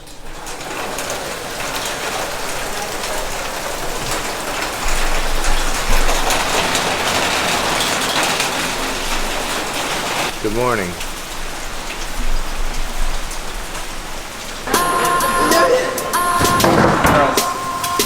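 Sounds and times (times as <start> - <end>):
rain falling: 0.0 - 18.0
low bumps: 14.6 - 18.0.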